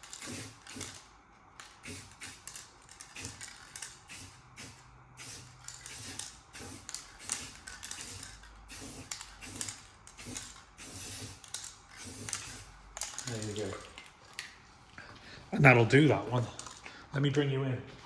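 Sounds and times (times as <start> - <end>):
aerosol spray can hissing: 0.0 - 1.0, 1.8 - 12.8.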